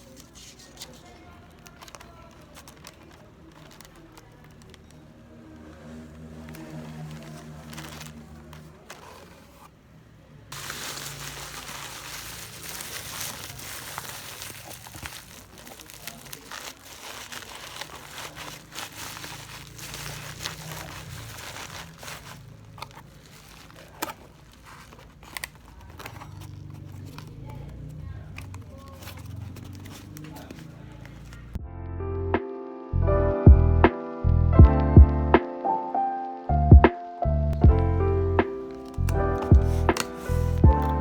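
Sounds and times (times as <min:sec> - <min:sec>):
packaging crinkling: 0:00.0 - 0:09.7, 0:10.5 - 0:31.6, 0:37.7 - 0:41.0.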